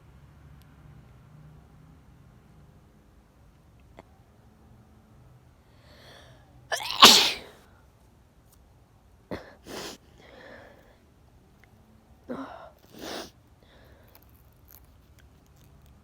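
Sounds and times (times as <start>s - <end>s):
breathy in-breath: 5.7s - 7.4s
person sneezing: 6.7s - 7.5s.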